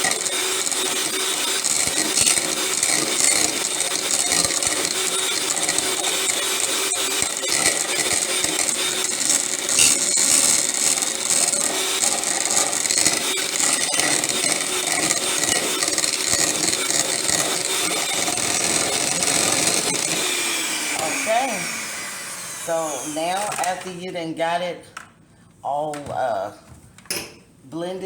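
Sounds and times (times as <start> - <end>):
electric hand mixer running: 0.0 - 23.9.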